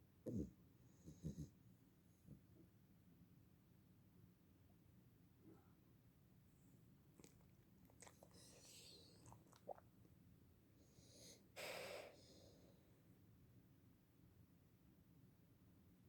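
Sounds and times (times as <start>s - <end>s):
breathy puff of air: 11.2s - 12.6s.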